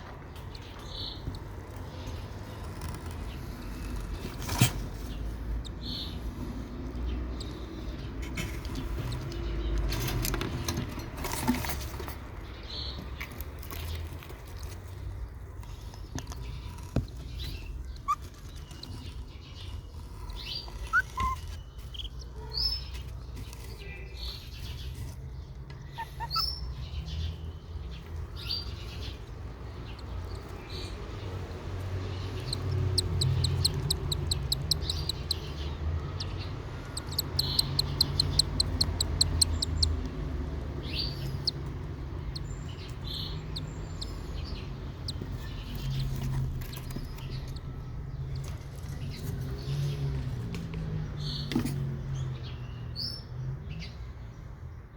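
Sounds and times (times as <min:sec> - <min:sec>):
chick peeping: 0:32.3 - 0:40.2, 0:40.8 - 0:47.6.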